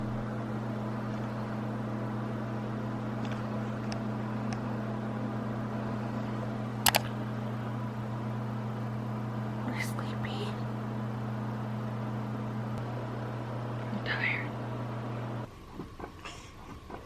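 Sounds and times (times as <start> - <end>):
low mechanical hum: 0.0 - 17.0
sharp clicks: 6.9 - 7.1.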